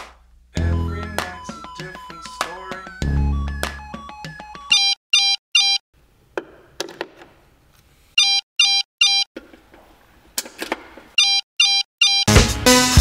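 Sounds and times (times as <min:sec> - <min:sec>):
phone ringtone beeping: 0:00.6 - 0:05.8, 0:08.2 - 0:09.3, 0:11.2 - 0:12.4.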